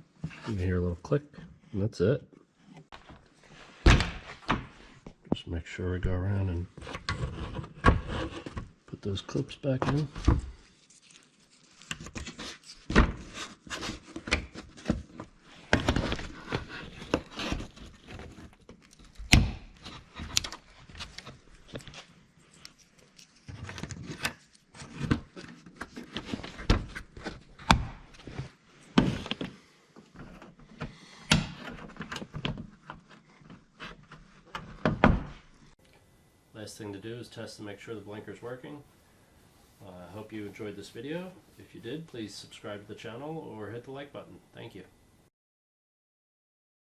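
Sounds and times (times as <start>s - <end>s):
rustling of plastic panel: 9.8s - 22.1s, 23.2s - 35.4s.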